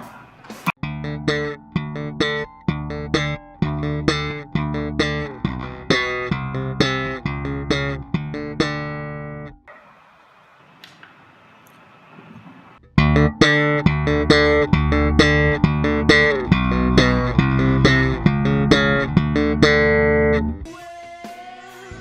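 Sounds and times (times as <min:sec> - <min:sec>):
slap bass playing: 0:00.8 - 0:09.6, 0:12.8 - 0:20.7.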